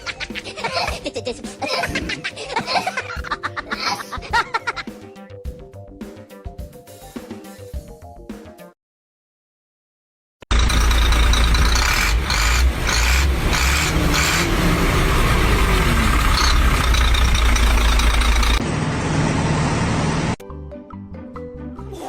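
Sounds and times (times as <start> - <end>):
loud motor rumbling: 10.5 - 20.4.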